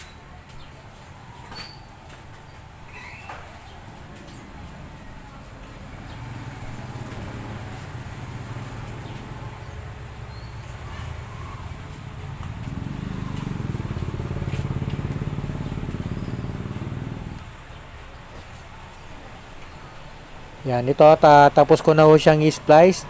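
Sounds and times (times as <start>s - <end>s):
small motorcycle engine running: 6.0s - 17.4s.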